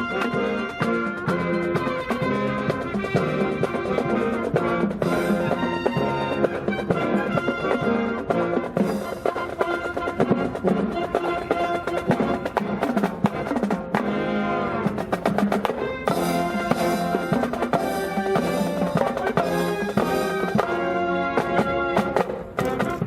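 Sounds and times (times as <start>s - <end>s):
brass band playing: 0.0s - 23.0s
cymbals: 15.8s - 23.0s.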